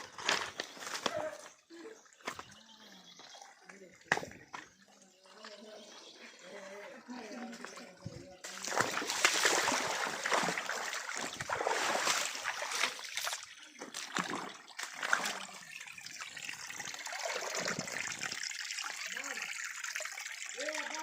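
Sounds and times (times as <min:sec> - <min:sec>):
water splashing and trickling: 0:00.0 - 0:21.0
sharp water splashes: 0:08.4 - 0:21.0.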